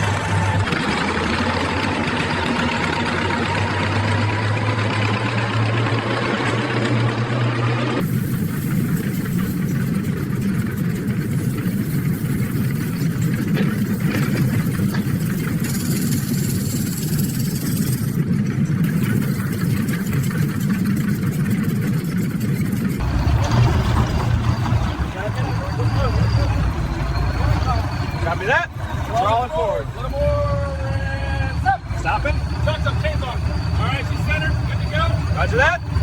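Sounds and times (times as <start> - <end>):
heavy engine idling: 0.0 - 36.0.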